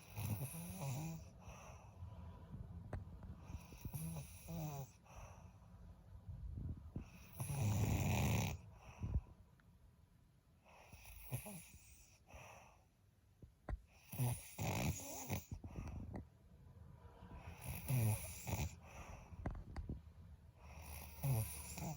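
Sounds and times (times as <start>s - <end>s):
heavy snoring: 0.0s - 1.8s, 3.4s - 5.2s, 7.0s - 9.2s, 10.7s - 12.5s, 14.0s - 16.0s, 17.4s - 19.6s, 20.6s - 21.9s.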